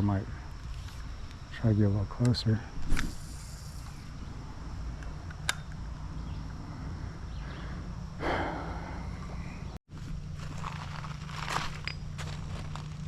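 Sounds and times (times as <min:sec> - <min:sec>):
sharp click: 0:05.0 - 0:05.8.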